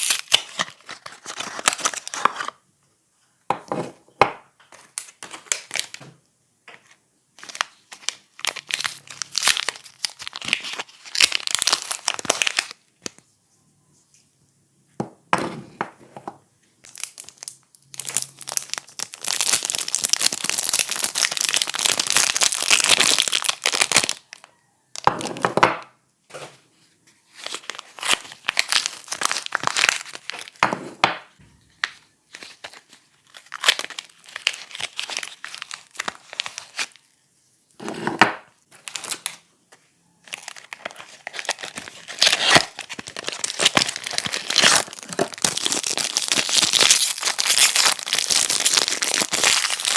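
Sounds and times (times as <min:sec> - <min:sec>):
packaging crinkled and torn: 0:00.0 - 0:02.6, 0:04.8 - 0:06.0, 0:07.4 - 0:13.2, 0:16.8 - 0:24.5, 0:27.3 - 0:30.6, 0:31.8 - 0:37.1, 0:38.8 - 0:39.4, 0:40.2 - 0:49.9.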